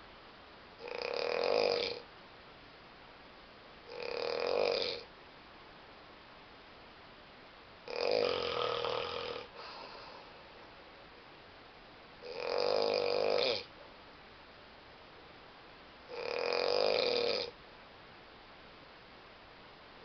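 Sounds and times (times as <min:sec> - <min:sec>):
person snoring: 0:00.8 - 0:02.0, 0:03.9 - 0:05.1, 0:07.9 - 0:10.3, 0:12.2 - 0:13.7, 0:16.1 - 0:17.6.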